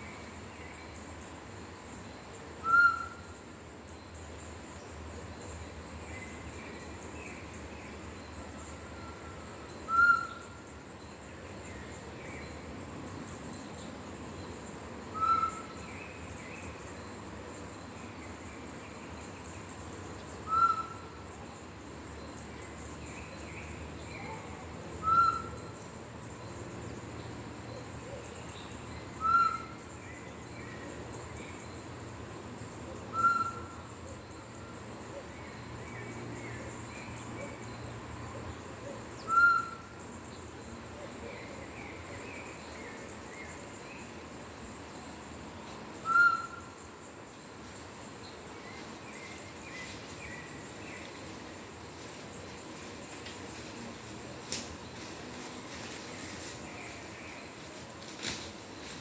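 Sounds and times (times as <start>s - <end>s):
crickets buzzing: 0.0s - 59.0s
bird-call whistle notes: 20.5s - 21.0s, 46.0s - 46.6s.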